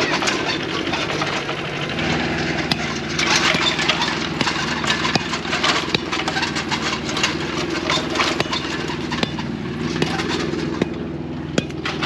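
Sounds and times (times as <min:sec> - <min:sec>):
excavator engine running: 0:00.0 - 0:12.0
bucket knocking and clattering: 0:02.6 - 0:12.0.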